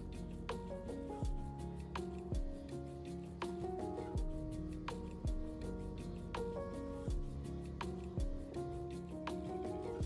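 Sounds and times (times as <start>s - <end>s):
kick drum: 1.2s - 1.6s, 2.3s - 2.7s, 4.2s - 4.5s, 5.2s - 5.6s, 7.1s - 7.4s, 8.2s - 8.6s.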